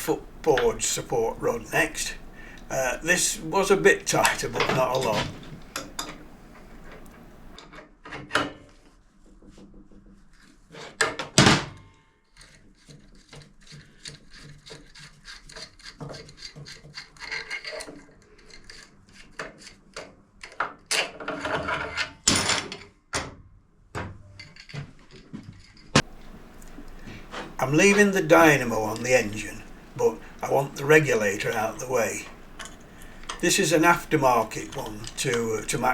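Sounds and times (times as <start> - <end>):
spanner clinking and scraping: 26.0 - 35.9.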